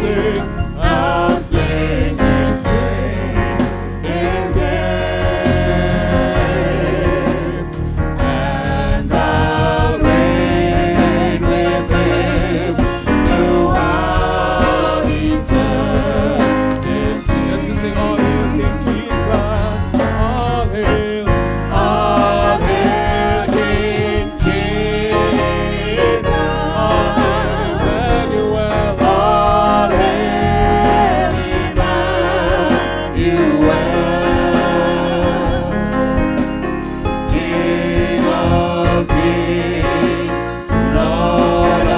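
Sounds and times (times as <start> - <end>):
band accompaniment: 0.0 - 41.9
group singing praise song: 0.0 - 41.9.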